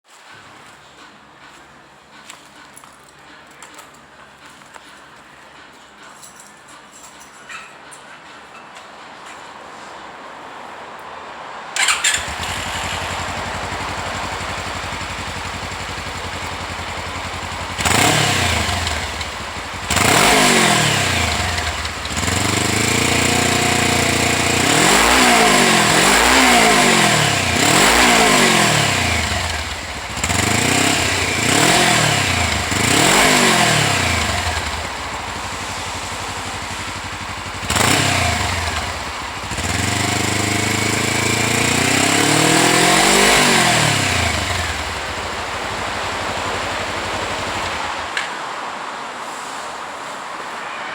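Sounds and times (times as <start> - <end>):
motorcycle engine idling: 11.8 - 48.1
motorcycle engine revving: 11.8 - 48.2.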